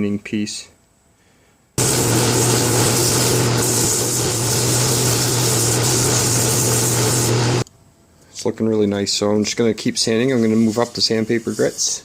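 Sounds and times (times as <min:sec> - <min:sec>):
sandpaper hissing on spinning wood: 0:01.8 - 0:07.6, 0:10.2 - 0:12.0
wood lathe motor hum: 0:01.8 - 0:07.6.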